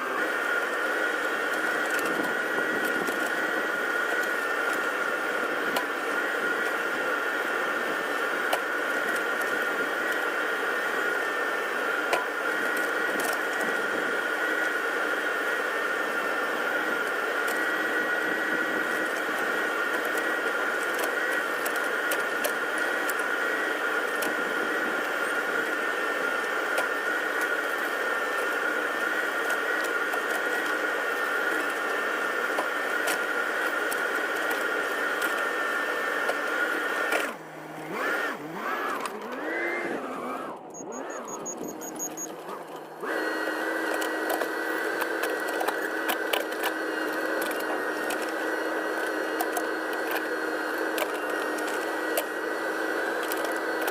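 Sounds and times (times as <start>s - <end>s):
diesel engine running: 0.0s - 53.9s
high whine: 37.2s - 44.8s.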